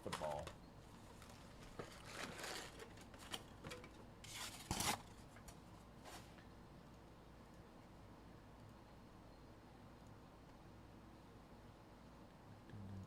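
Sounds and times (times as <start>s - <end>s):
wrapping ripping and rustling: 1.2s - 3.5s, 4.2s - 5.2s.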